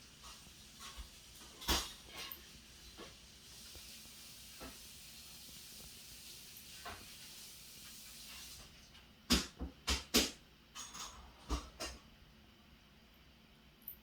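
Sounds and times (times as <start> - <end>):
high hiss from laptop: 0.0 - 9.1.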